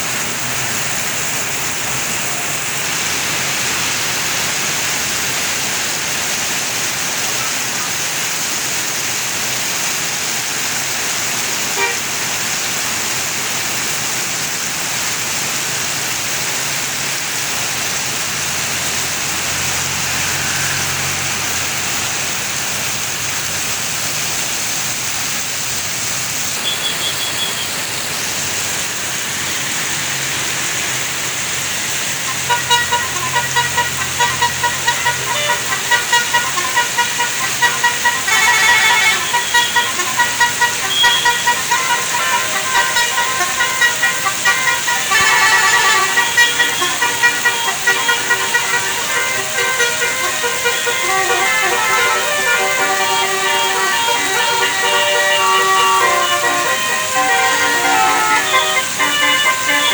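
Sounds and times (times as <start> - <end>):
road and engine noise: 0.0 - 59.9
multi-tone bus horn melody: 11.4 - 12.4, 17.6 - 23.4, 29.3 - 59.9.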